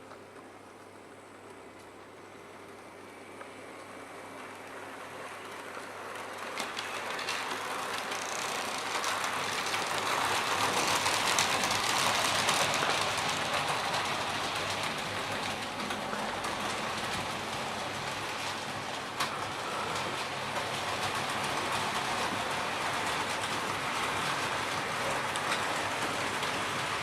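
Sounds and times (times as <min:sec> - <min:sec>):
model train motor whirring: 0:06.1 - 0:13.8
wheels clicking over rail joints: 0:06.2 - 0:27.0.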